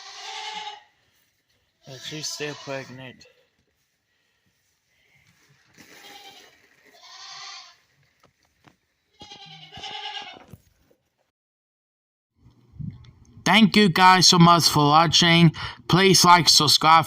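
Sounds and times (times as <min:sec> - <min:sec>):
goats bleating: 0:00.0 - 0:00.9, 0:01.8 - 0:03.4, 0:05.8 - 0:07.8, 0:09.1 - 0:10.5.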